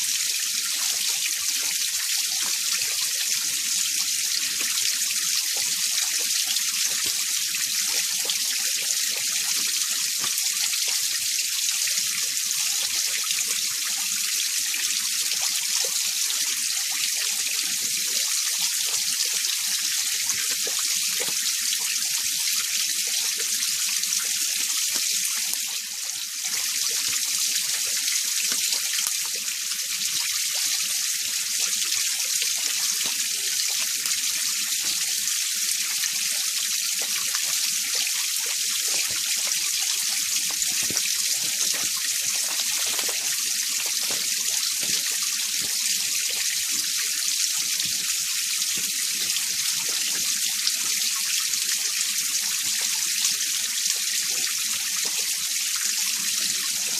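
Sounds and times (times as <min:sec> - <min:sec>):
stream rushing over rocks: 0:37.0 - 0:47.0.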